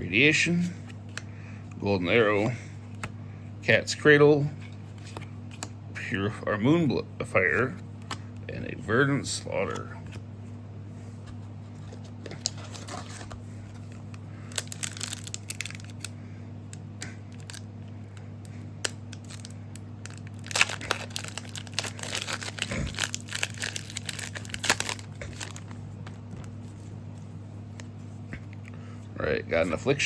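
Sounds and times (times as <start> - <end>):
foil pack crinkling and tearing: 12.4 - 16.1, 17.3 - 17.7, 18.8 - 25.8.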